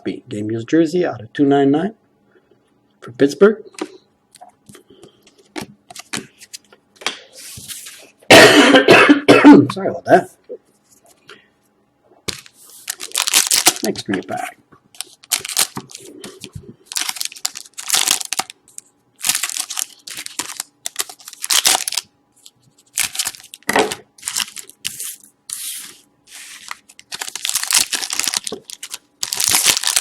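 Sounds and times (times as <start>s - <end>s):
card pack wrappers ripping: 12.3s - 14.4s, 15.0s - 30.0s.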